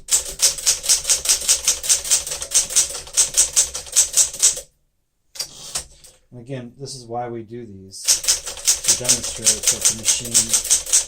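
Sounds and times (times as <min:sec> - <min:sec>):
manual typewriter typing: 0:00.0 - 0:04.6, 0:08.0 - 0:11.0.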